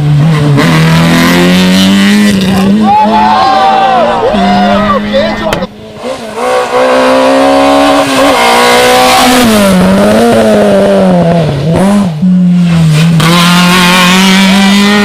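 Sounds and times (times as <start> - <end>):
rally car engine at full throttle: 0.0 - 15.0.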